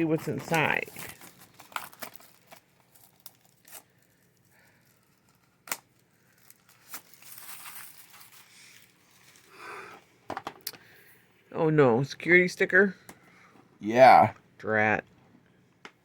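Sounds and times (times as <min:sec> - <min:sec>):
plastic shrink-wrap tearing: 0:00.2 - 0:09.7.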